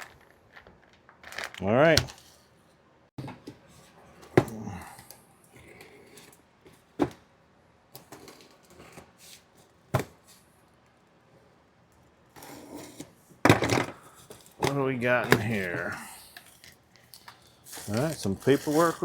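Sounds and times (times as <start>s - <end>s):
packaging rustling: 0.0s - 2.4s, 15.3s - 19.0s
items set down with knocks: 13.4s - 15.9s.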